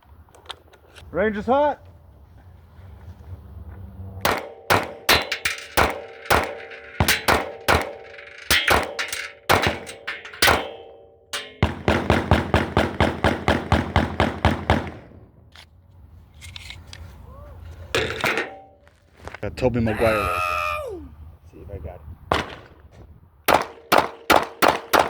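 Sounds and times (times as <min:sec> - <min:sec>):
gunshots: 0:04.2 - 0:15.4, 0:22.3 - 0:22.8, 0:23.5 - 0:25.0
rapid pistol fire: 0:04.3 - 0:10.8, 0:11.5 - 0:15.4, 0:22.3 - 0:22.8, 0:23.5 - 0:25.0.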